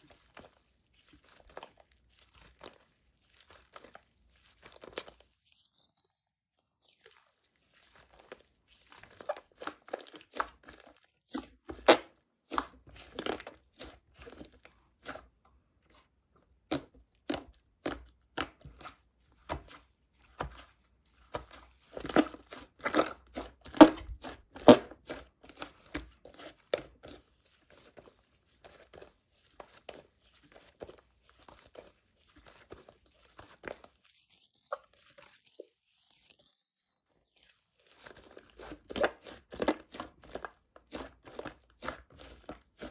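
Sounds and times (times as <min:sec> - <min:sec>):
slime squished making crackling pops: 0:22.0 - 0:25.2.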